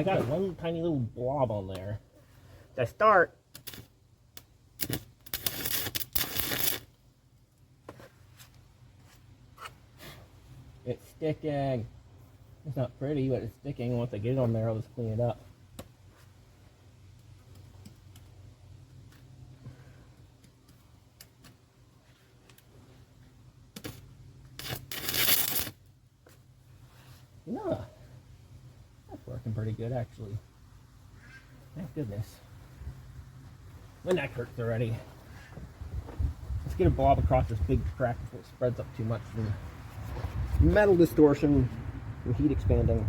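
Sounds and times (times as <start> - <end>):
welding arc crackling: 3.5 - 6.9, 24.6 - 25.8.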